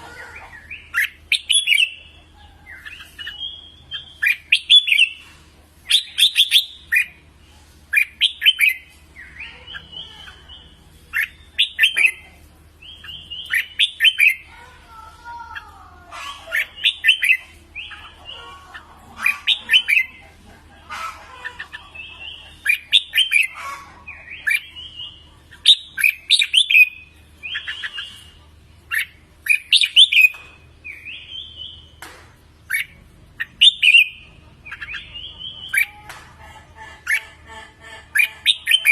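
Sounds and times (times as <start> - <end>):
bird whistled song phrases: 24.2 - 31.9, 32.7 - 35.9.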